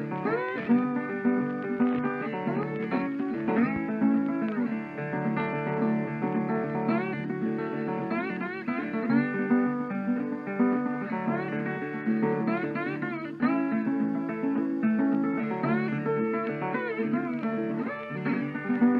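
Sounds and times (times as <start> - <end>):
plucked guitar with sliding notes: 0.0 - 18.9.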